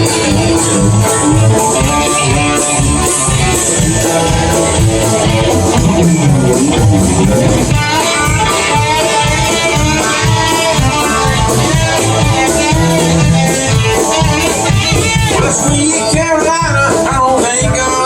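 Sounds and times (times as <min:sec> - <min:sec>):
lead guitar solo: 0:00.0 - 0:17.0
bass: 0:00.0 - 0:18.0
steady drum beat: 0:00.0 - 0:18.0.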